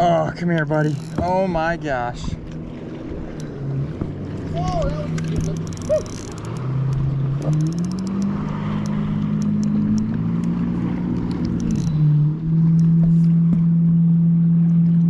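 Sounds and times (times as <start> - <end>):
motorboat engine running: 0.0 - 15.0
light clicks: 5.0 - 12.0.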